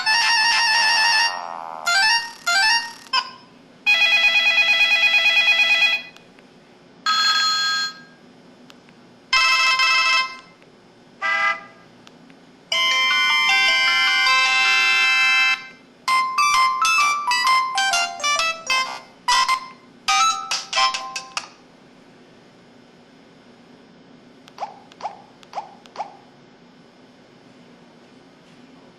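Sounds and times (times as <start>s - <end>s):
ringtone melody: 0.0s - 4.4s, 12.7s - 21.4s
electronic phone tones: 12.7s - 20.4s.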